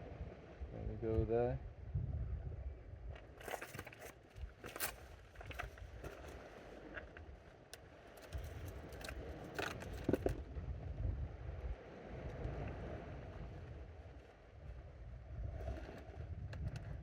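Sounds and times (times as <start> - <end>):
wind rumbling on microphone: 0.0 - 17.0
fishing tackle clicks and scrapes: 3.2 - 10.4.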